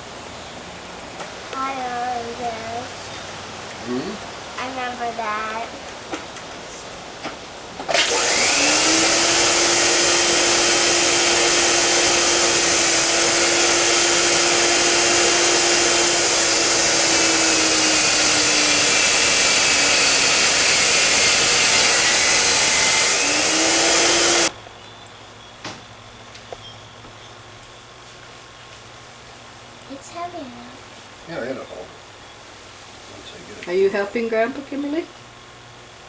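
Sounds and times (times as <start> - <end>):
electric motor whooshing and humming: 7.9 - 24.6.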